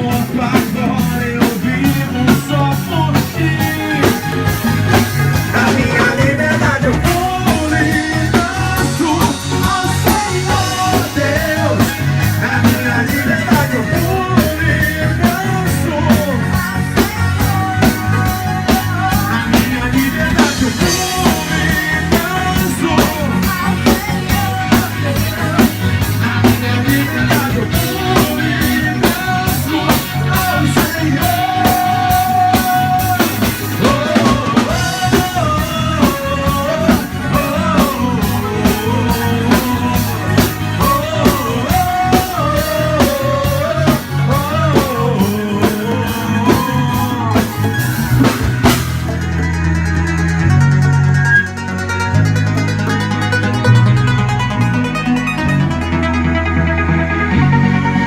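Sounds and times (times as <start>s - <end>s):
drum kit beat: 0.0s - 56.2s
bass guitar: 0.0s - 58.0s
electric guitar: 0.0s - 58.0s
rock band playing: 0.0s - 58.0s
wavering lead melody: 0.0s - 58.0s.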